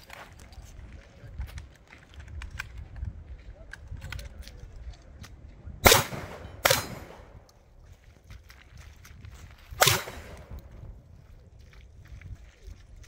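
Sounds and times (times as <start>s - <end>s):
shotgun shots: 5.8s - 7.4s, 9.8s - 10.8s.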